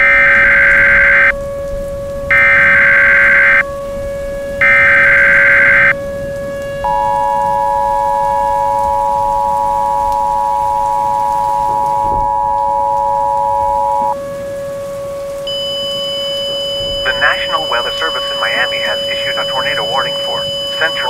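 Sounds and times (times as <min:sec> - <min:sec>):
screeching header data: 0:00.0 - 0:01.3, 0:02.3 - 0:03.6, 0:04.6 - 0:06.0, 0:06.9 - 0:14.2, 0:15.5 - 0:21.0
low steady tone: 0:00.0 - 0:21.0
rain-like hiss: 0:00.0 - 0:21.0
two-tone attention signal: 0:06.9 - 0:14.2, 0:15.5 - 0:21.0.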